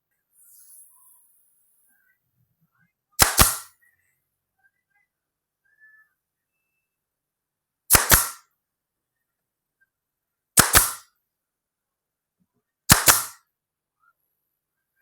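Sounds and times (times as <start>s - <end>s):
hammer driving nails into wood: 3.2s - 3.7s, 7.9s - 8.4s, 10.6s - 11.1s, 12.9s - 13.4s.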